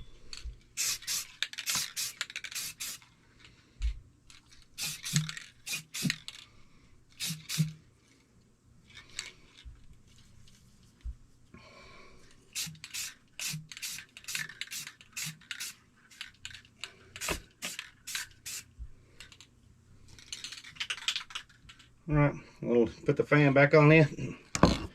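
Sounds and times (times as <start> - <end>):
aerosol spray paint hissing: 0.8 - 3.0, 4.8 - 6.2, 7.2 - 7.8, 12.5 - 15.8, 17.2 - 18.7.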